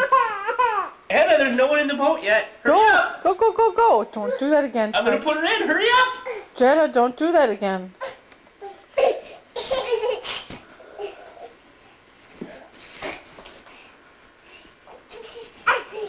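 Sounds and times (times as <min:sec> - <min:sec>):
young children laughing: 0:00.0 - 0:01.0, 0:09.0 - 0:11.6, 0:15.1 - 0:16.0.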